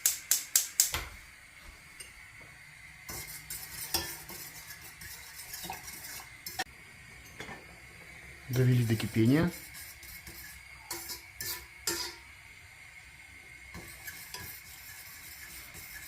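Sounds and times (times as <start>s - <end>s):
stirring thick porridge in pot: 3.1s - 6.6s, 8.6s - 12.2s, 13.8s - 16.0s
fork clinking on metal saucepan: 10.9s - 12.2s.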